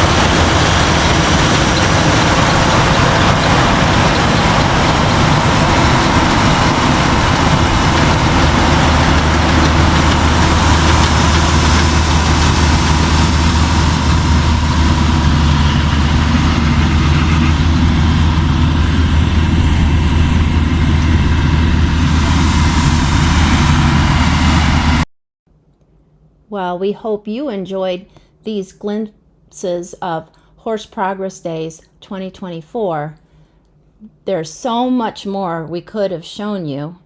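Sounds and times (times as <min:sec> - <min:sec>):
large engine humming: 0:00.0 - 0:25.0.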